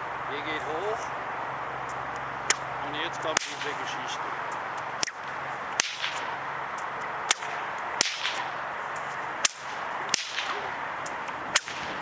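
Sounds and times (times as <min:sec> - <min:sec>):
steady background hiss: 0:00.0 - 0:12.0
bullwhip cracking: 0:02.2 - 0:12.0.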